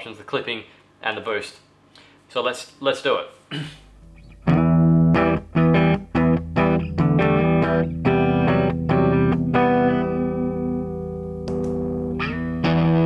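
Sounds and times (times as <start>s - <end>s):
electric guitar strummed chords: 3.8s - 13.0s.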